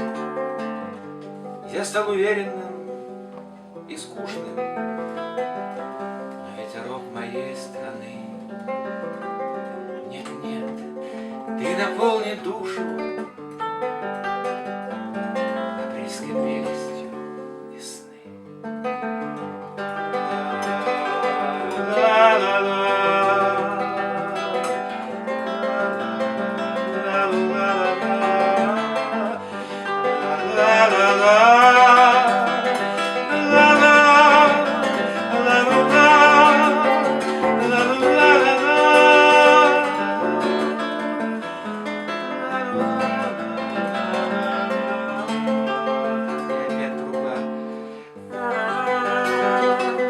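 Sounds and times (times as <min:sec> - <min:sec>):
acoustic guitar song: 0:00.0 - 0:50.0.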